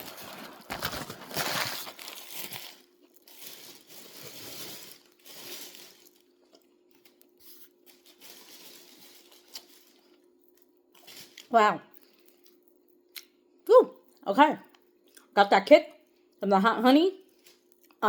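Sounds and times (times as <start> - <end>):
crunchy chewing: 0.0 - 13.3.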